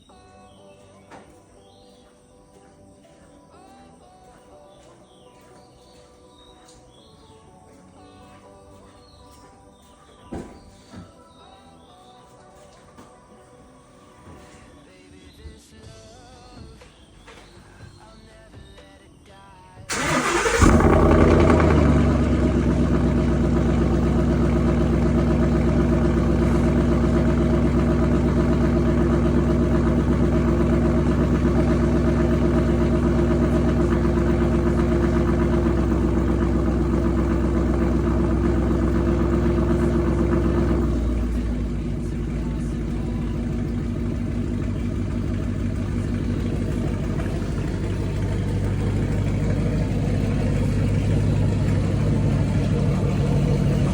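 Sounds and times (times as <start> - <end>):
car engine starting and idling: 19.9 - 53.9.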